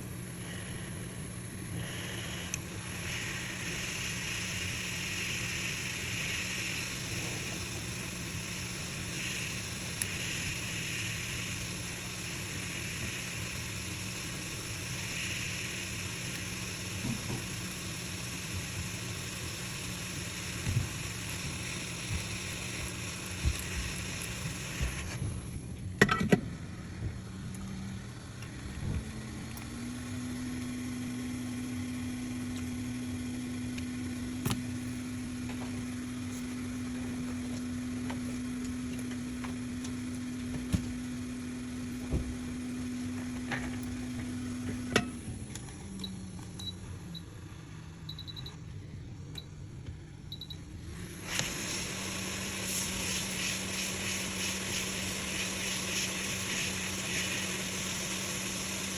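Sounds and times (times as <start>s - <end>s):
equipment hiss: 0.0s - 25.7s, 26.6s - 45.9s, 50.9s - 58.9s
low equipment hum: 0.0s - 58.9s.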